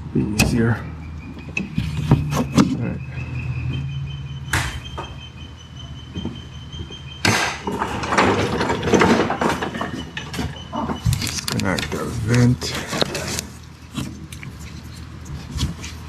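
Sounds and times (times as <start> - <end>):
plastic scraping and clattering: 7.6 - 16.0.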